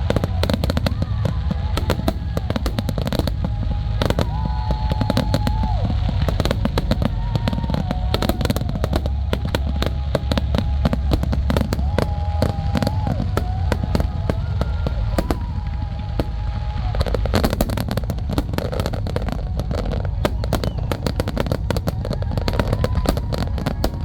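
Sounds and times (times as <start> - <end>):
fireworks bangs and crackles: 0.0 - 24.0
low rumble: 0.0 - 24.0.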